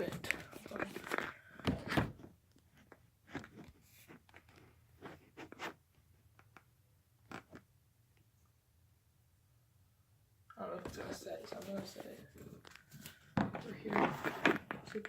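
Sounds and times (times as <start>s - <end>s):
light knocks scrapes and rustles: 10.8s - 15.0s.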